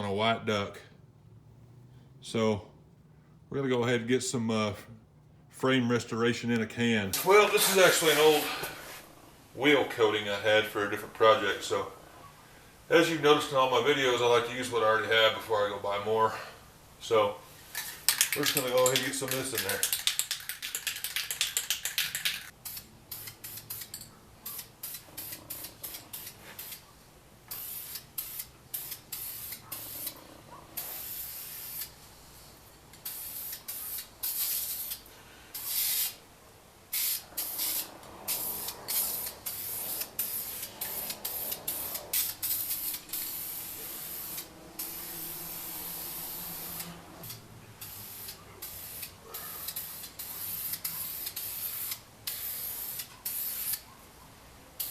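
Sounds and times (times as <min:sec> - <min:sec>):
aerosol mixing ball rattling: 0:17.7 - 0:22.5
aerosol can spraying: 0:17.8 - 0:26.8, 0:27.5 - 0:30.2, 0:30.8 - 0:36.2, 0:36.9 - 0:53.9.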